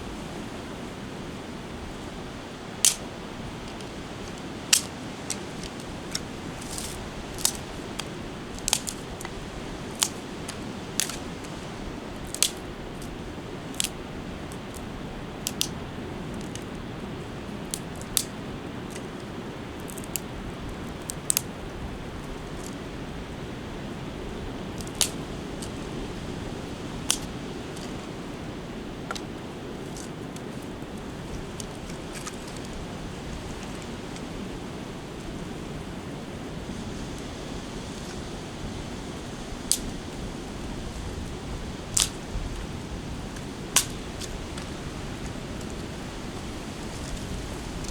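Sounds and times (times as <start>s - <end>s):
low steady rush: 0.0s - 47.9s
garlic popping and crackling in oil: 4.7s - 11.6s, 12.2s - 15.8s, 19.8s - 20.3s, 24.8s - 25.8s, 27.1s - 27.3s.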